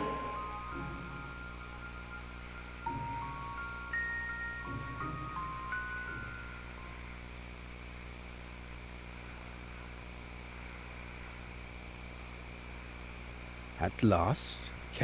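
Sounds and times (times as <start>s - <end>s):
glockenspiel chime notes: 0.0s - 7.1s
low hum with hiss: 0.0s - 15.0s.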